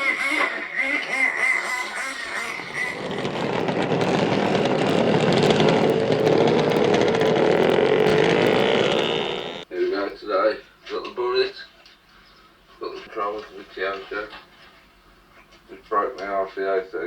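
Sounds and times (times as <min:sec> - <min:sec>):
small engine buzzing at high revs: 0:00.0 - 0:09.7.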